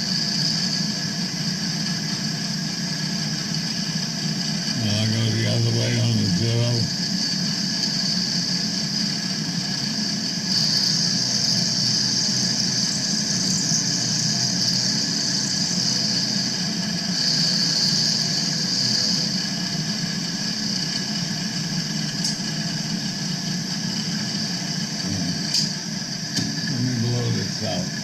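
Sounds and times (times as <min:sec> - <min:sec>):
high cutting hiss: 0:00.0 - 0:28.0
milling machine hum: 0:00.0 - 0:28.0.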